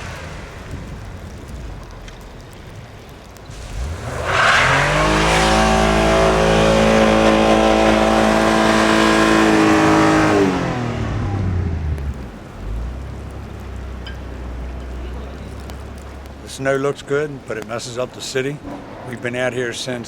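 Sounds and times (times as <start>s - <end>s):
engine revving: 3.5s - 13.2s.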